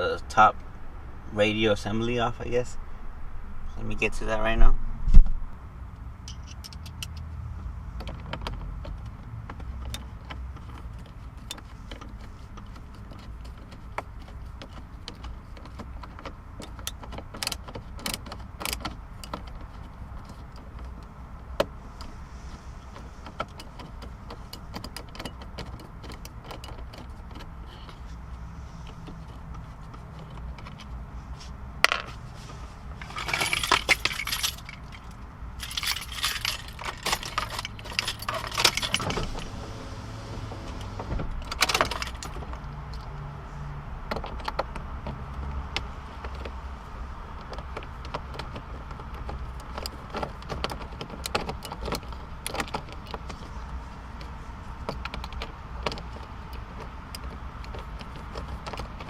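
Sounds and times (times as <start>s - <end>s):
metallic clicks of hand tools: 6.3s - 7.3s
jingling metal: 32.9s - 39.5s, 41.4s - 42.5s.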